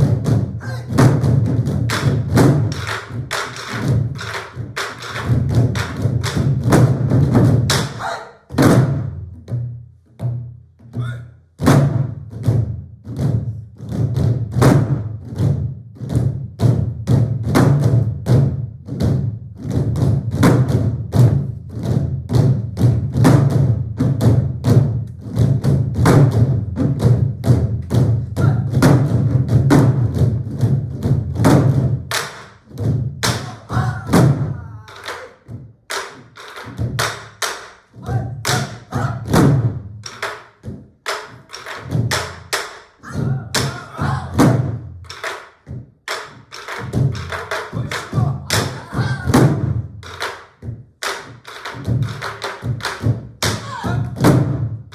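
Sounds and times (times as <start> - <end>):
barrel drums struck with sticks: 0.0 - 54.9.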